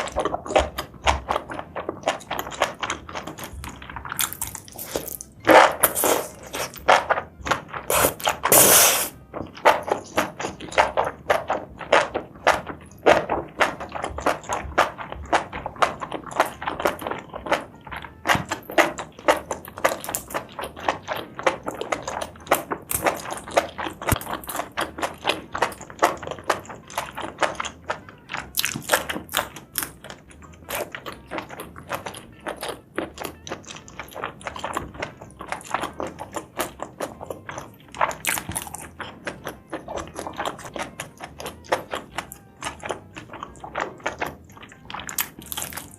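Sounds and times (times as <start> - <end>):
person chewing crunchy food: 0.0 - 45.9.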